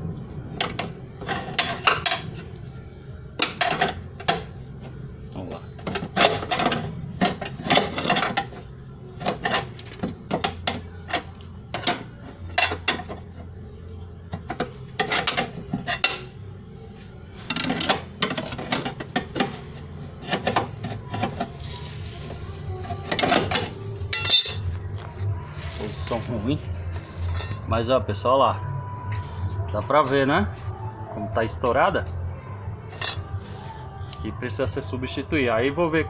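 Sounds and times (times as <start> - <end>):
low steady hum: 0.0 - 36.0
metal clinks of tools: 24.1 - 24.7.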